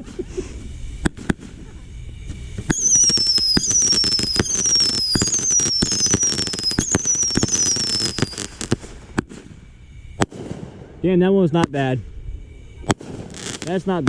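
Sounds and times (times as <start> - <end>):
fireworks crackling: 0.0 - 14.0
whistling firework shots: 0.0 - 14.0
fireworks pops: 1.0 - 1.7, 2.3 - 9.5.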